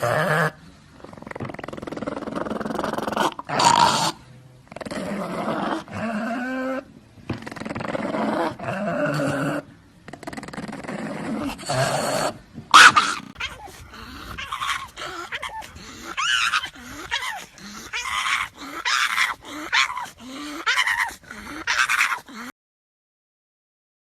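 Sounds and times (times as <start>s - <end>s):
dog whining: 10.2s - 22.5s.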